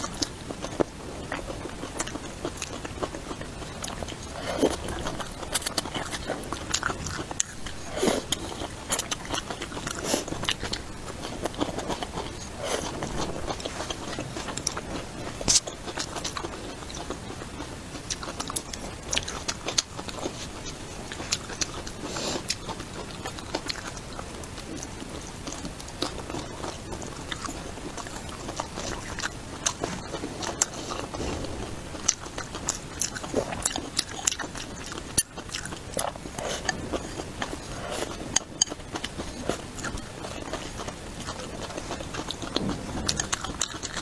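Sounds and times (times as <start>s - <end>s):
person chewing food: 0.0s - 44.0s
wet mouth sounds: 4.3s - 16.4s.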